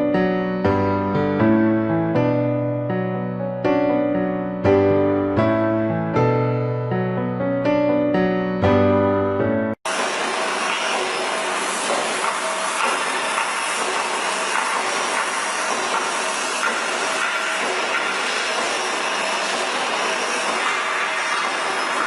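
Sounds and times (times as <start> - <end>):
heavy machinery hissing: 9.9 - 22.0.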